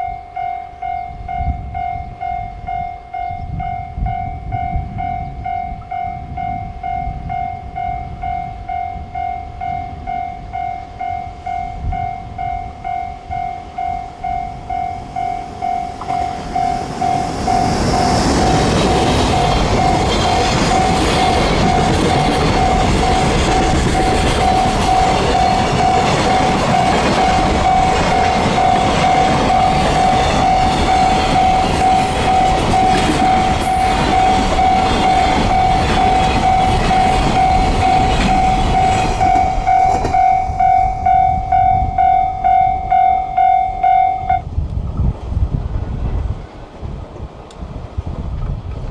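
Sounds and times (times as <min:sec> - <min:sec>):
level crossing warning bell: 0:00.0 - 0:44.5
train passing with wheel clatter: 0:00.0 - 0:48.9.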